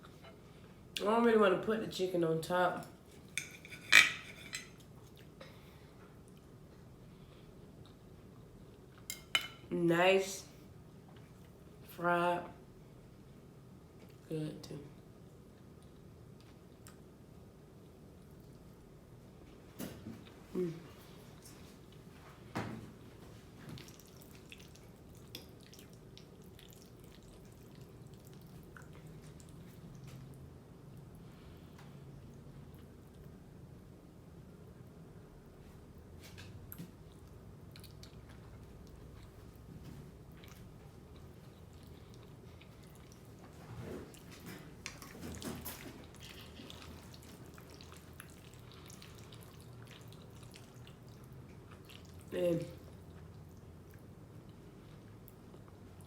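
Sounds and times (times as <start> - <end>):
wet chewing and mouth clicks: 23.7 - 30.4, 36.7 - 56.0.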